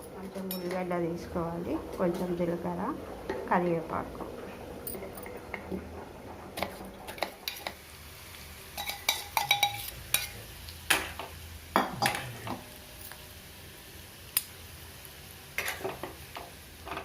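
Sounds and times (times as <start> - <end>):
oil sizzling: 0.0 - 17.0
metal spoon scraping a pan: 6.6 - 7.8, 8.7 - 11.2, 15.6 - 16.2.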